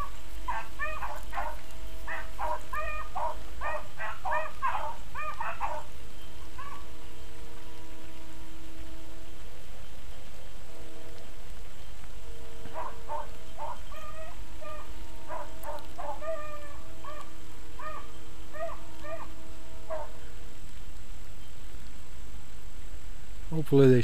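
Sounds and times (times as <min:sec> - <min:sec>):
beagles baying: 0:00.0 - 0:08.2, 0:12.2 - 0:20.7.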